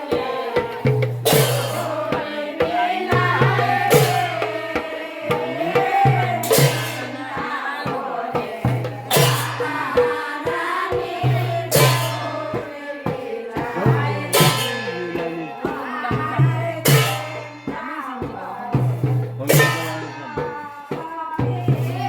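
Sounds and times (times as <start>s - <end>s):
drum beating steady rhythm: 0.0s - 22.0s
voices singing folk song: 0.0s - 22.0s
cymbal crash: 0.8s - 2.2s, 5.3s - 7.2s, 8.8s - 10.2s, 11.7s - 12.4s, 13.8s - 17.8s.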